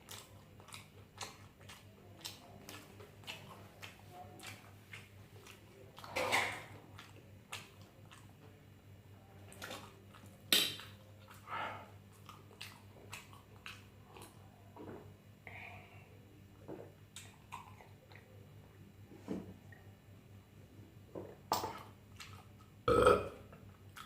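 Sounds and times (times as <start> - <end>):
chewing and mouth smacks: 0.0 - 8.4, 9.5 - 11.5, 12.1 - 14.4, 17.1 - 18.4, 21.5 - 22.7, 23.5 - 24.0.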